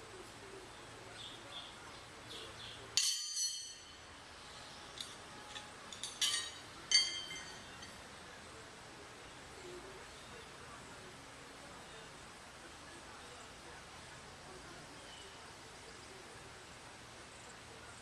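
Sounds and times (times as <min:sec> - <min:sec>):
faint outdoor background: 0:00.0 - 0:18.0
bright ringing clinks: 0:03.0 - 0:04.1, 0:05.0 - 0:08.0.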